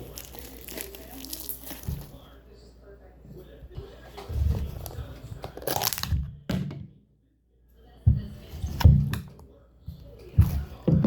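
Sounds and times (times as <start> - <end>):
crunching and crackling handling: 0.0 - 2.4, 4.6 - 6.1.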